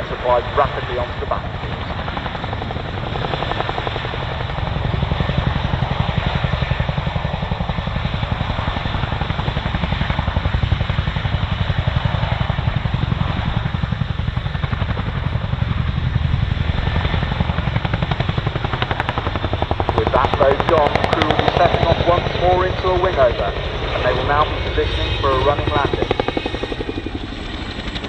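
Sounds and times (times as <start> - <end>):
turbine whine: 0.0 - 28.0
helicopter rotor blade-slap: 11.7 - 28.0.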